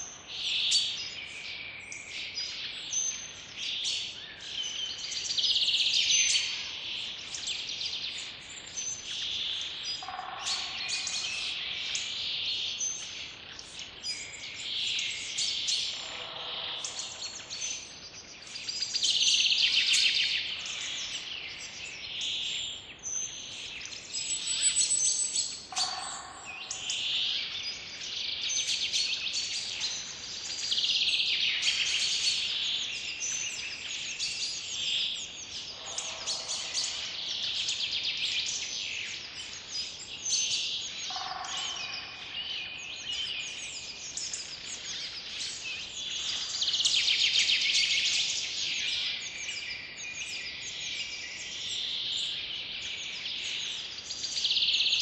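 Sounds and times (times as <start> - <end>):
songbirds chirping and trilling: 0.0 - 55.0
lower bird call: 35.8 - 37.4.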